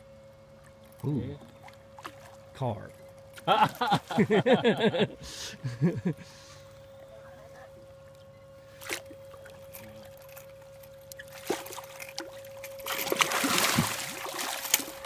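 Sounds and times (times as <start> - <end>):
faint steady hum: 0.0 - 15.0
fish splashing in water: 11.2 - 15.0.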